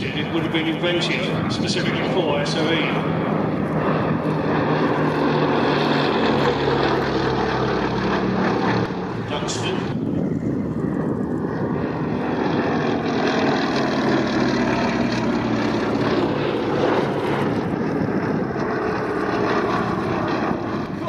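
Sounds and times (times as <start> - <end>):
propeller aircraft engine drone: 0.0 - 21.0.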